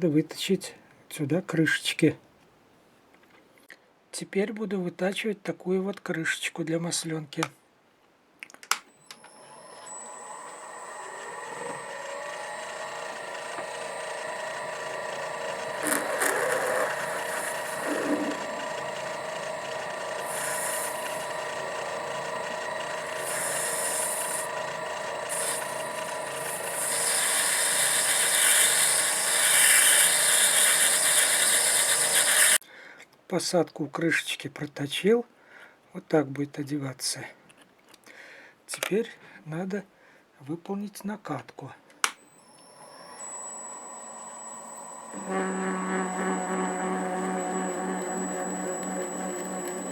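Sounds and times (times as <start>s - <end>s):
lathe motor whine: 9.0s - 32.6s, 42.3s - 49.9s
cutting tool scraping hiss: 10.7s - 32.6s, 43.1s - 49.9s.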